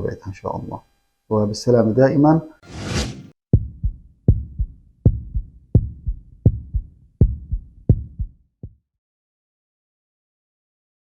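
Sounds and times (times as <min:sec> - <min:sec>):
heartbeat: 0:03.5 - 0:08.8.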